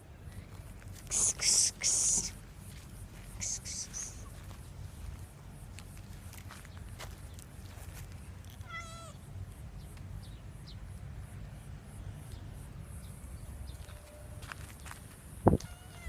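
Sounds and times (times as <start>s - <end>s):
steady low rumble: 0.0s - 15.6s
cat meowing: 8.6s - 9.2s, 15.6s - 16.0s.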